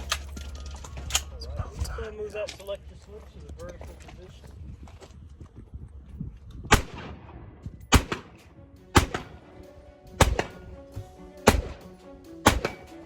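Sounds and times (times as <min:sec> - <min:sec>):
faint music: 0:00.0 - 0:13.0
gunshots: 0:06.7 - 0:13.0.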